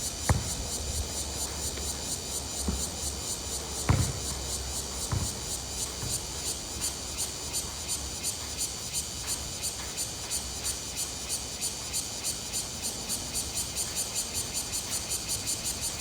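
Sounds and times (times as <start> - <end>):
insects chirping: 0.0 - 16.0
dull thumps: 0.2 - 1.1, 2.6 - 6.5.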